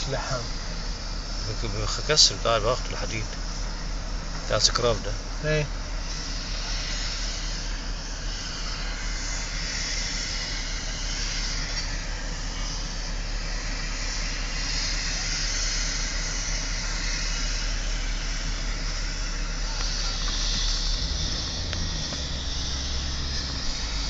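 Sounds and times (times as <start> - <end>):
low hum: 0.0 - 24.0
vehicle rushing noise: 19.0 - 24.0.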